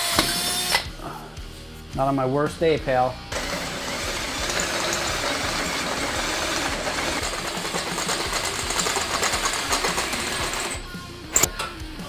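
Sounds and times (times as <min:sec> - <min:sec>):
electric drill boring metal: 0:00.0 - 0:00.8, 0:03.3 - 0:11.6.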